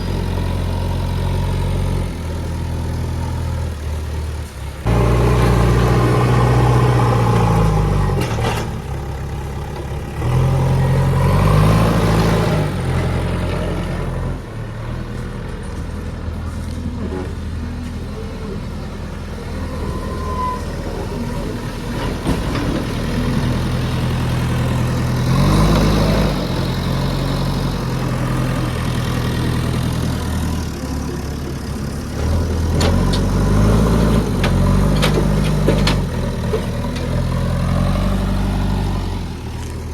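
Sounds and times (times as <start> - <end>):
diesel engine revving: 0.0 - 39.9.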